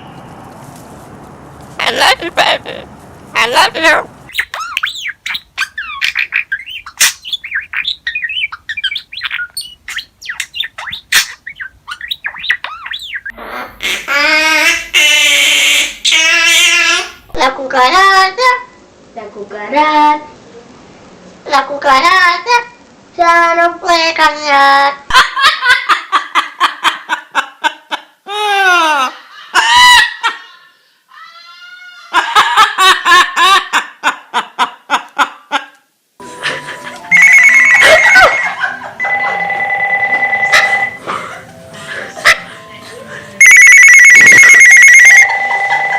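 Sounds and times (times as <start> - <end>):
parrot chirping and whistling: 4.3 - 13.4, 37.0 - 38.5, 43.4 - 45.3
parrot drawn-out calls: 37.1 - 38.3, 43.4 - 45.2.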